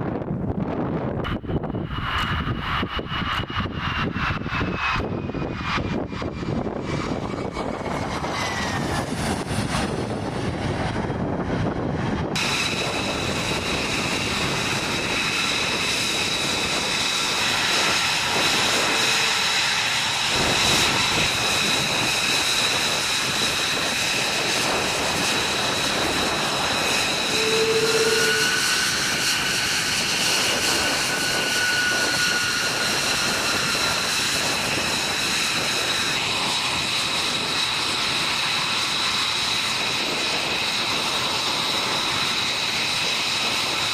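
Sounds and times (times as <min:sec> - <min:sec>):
jet engine whine and rush: 0:00.0 - 0:43.9.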